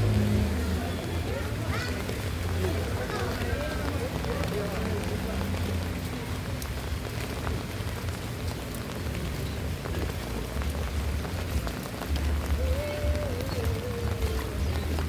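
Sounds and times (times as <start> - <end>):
steady rain falling: 0.0 - 15.0.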